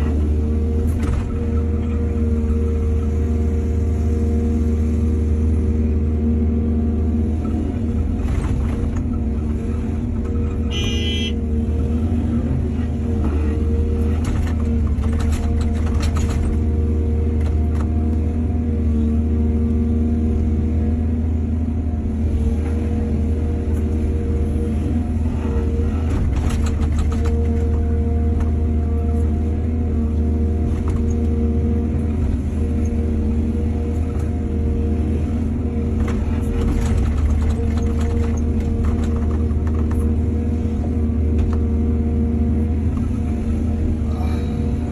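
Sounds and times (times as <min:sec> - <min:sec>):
excavator diesel engine running: 0:00.0 - 0:44.9
machine knocks and clatter: 0:14.1 - 0:16.7, 0:26.0 - 0:27.9, 0:36.0 - 0:40.2.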